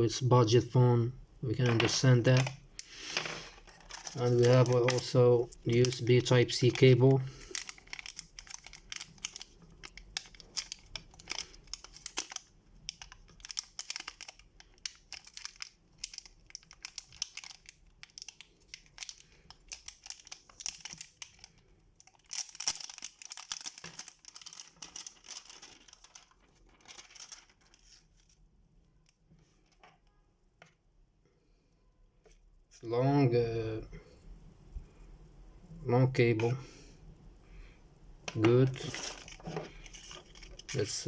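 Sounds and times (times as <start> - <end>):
plastic packaging crinkling and tearing: 3.4 - 28.5, 38.7 - 41.0.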